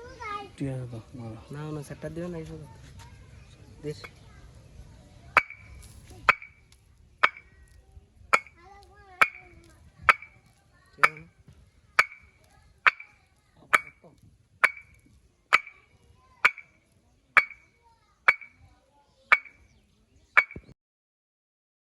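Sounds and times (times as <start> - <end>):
brick struck ringing clink: 5.4 - 5.7, 7.2 - 7.5, 14.6 - 15.0, 17.4 - 17.7.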